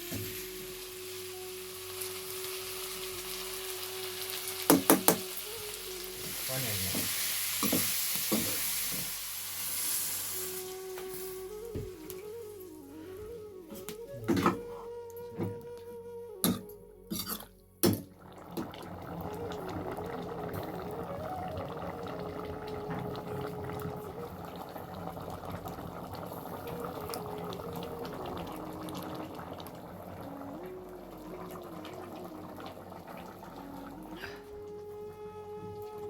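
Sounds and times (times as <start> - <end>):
soft flute melody: 0.0 - 7.5, 10.2 - 17.9, 18.8 - 36.0
water boiling hiss: 0.0 - 14.2, 18.2 - 36.0.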